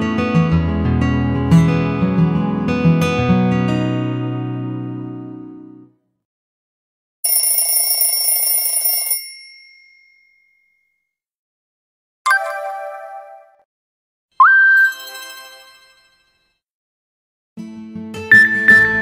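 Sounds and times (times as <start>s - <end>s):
message alert tones: 12.3s - 13.6s, 14.4s - 16.0s, 18.3s - 19.0s.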